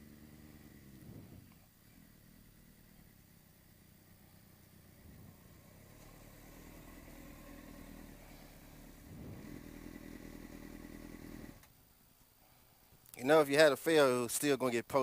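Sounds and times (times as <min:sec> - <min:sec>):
motorcycle engine at low revs: 0:00.0 - 0:11.7.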